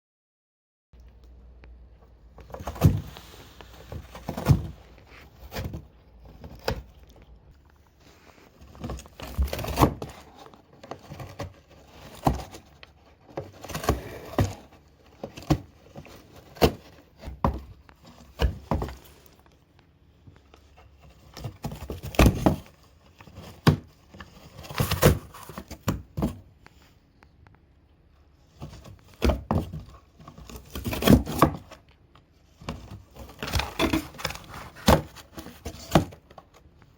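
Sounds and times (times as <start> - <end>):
cat ripping cardboard: 2.4 - 7.1, 8.0 - 19.4, 20.8 - 26.4, 28.4 - 31.8, 32.5 - 36.6.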